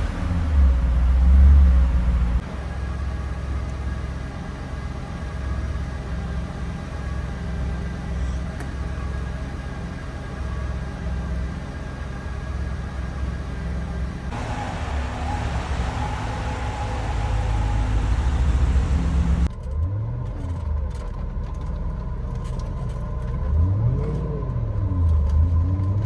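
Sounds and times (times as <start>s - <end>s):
car engine revving and idling: 0.0s - 26.0s.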